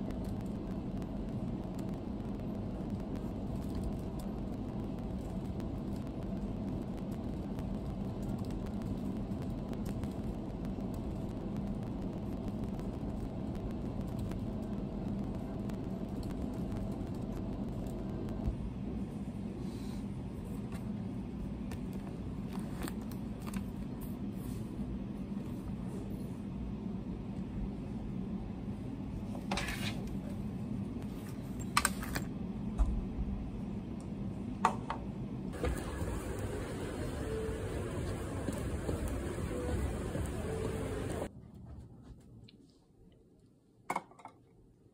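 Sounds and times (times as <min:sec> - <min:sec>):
faint hum: 0:00.0 - 0:43.7
moving vehicle rumble: 0:35.6 - 0:41.3.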